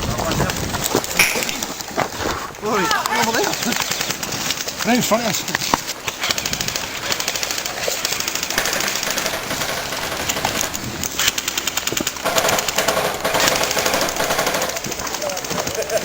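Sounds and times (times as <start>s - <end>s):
airsoft guns firing bursts: 6.2s - 16.0s.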